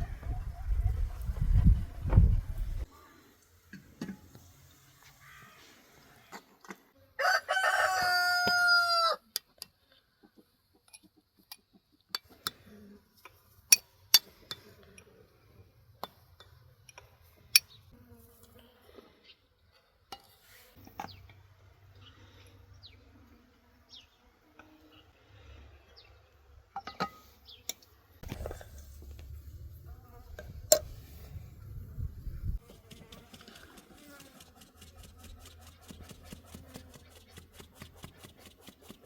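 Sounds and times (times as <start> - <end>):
rooster crowing: 7.2 - 9.2.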